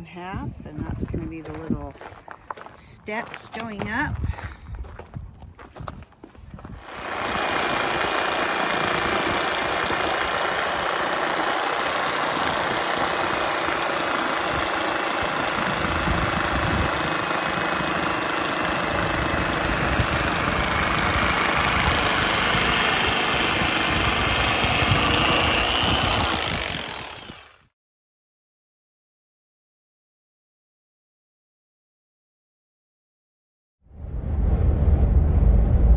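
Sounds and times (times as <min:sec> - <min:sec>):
power saw cutting wood: 0:06.8 - 0:27.7.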